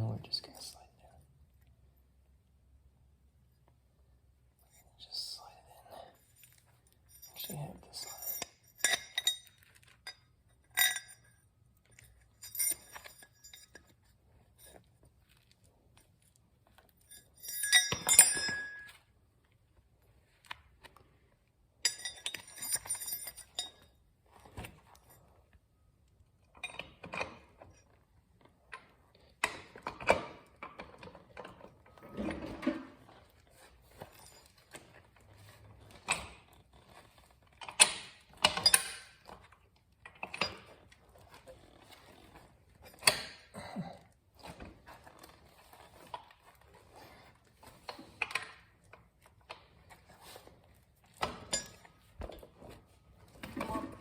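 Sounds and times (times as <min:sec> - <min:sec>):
ringing metallic clinks: 0:07.1 - 0:11.3, 0:17.4 - 0:18.9.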